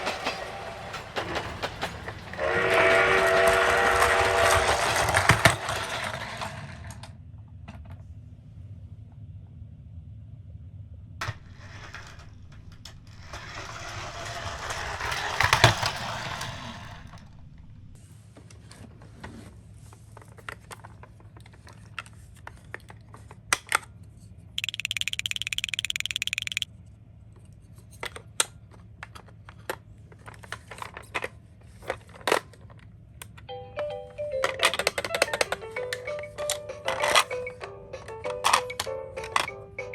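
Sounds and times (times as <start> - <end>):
rolling scraping sweep: 0.0 - 6.9, 11.2 - 18.0
toy cars clicking and clattering: 0.0 - 7.1, 11.2 - 18.0, 24.6 - 26.7, 27.8 - 33.5, 34.2 - 39.9
buzzing tone: 24.6 - 26.6.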